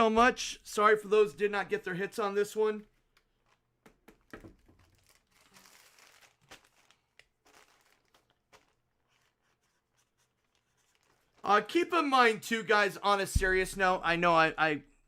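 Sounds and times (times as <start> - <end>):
packaging crinkling: 4.5 - 11.5.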